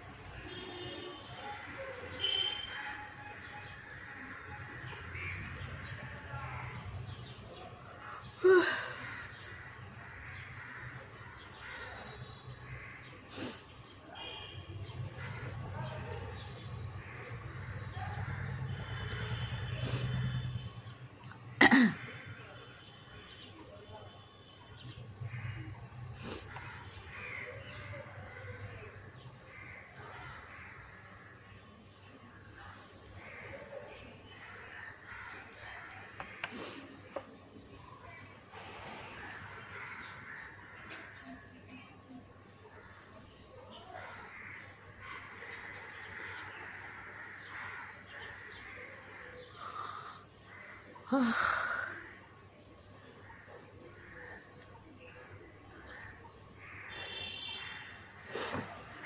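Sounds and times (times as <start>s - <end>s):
crows cawing: 2.2s - 5.6s, 8.0s - 13.5s, 15.2s - 15.8s, 25.3s - 31.4s, 33.2s - 37.2s, 39.2s - 41.4s, 43.8s - 52.3s, 53.2s - 54.6s, 55.7s - 58.6s.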